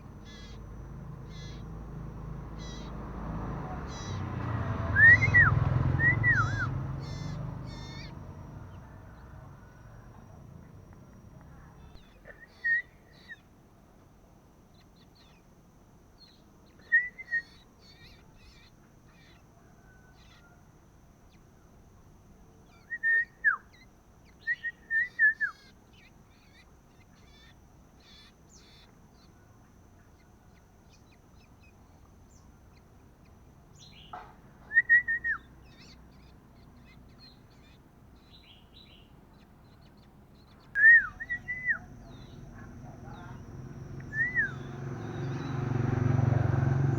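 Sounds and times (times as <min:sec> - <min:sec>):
faint high chirps: 0:00.0 - 0:46.9
bird whistled calls: 0:04.9 - 0:08.2, 0:11.9 - 0:13.4, 0:16.8 - 0:20.6, 0:22.7 - 0:26.1, 0:33.8 - 0:39.0, 0:40.5 - 0:45.6.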